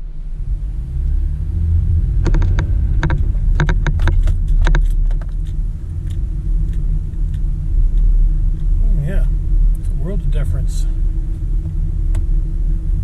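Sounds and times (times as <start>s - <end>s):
road and engine rumble: 0.0s - 13.0s
light clicks and rattles: 2.2s - 8.7s.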